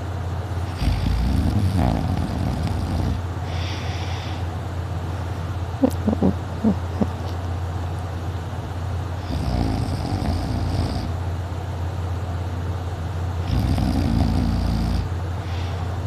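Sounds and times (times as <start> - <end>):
steady low hum: 0.0 - 16.0
person snoring: 0.7 - 4.2, 9.2 - 11.1, 13.5 - 15.1.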